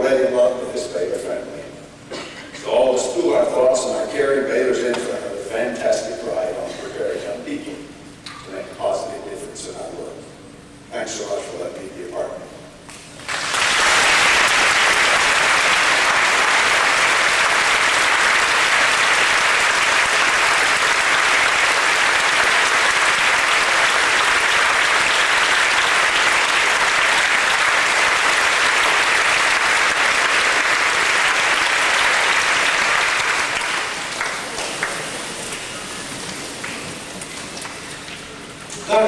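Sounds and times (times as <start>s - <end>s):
large audience applauding: 13.2s - 38.2s.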